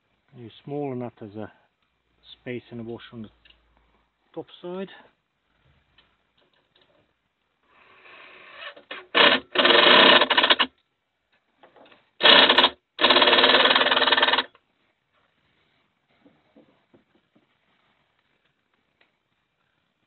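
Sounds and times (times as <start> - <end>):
power driver spinning a bolt: 8.6 - 10.7, 12.2 - 14.6.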